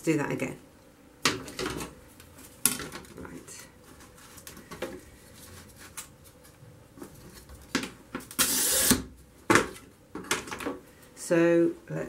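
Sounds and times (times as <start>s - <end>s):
glass cutter scoring glass: 8.4s - 9.1s.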